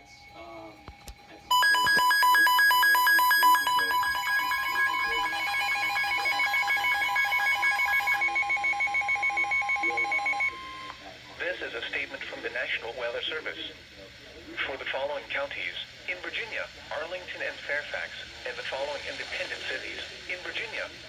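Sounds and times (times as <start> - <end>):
pulsing emergency alert beeps: 1.5 - 10.9.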